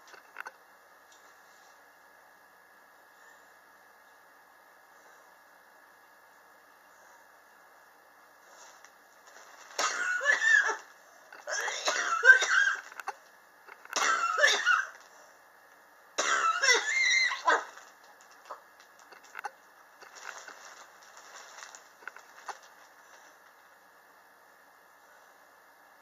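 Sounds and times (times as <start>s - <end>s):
person coughing: 9.8s - 10.8s, 11.4s - 12.9s, 14.0s - 15.0s, 16.2s - 16.9s.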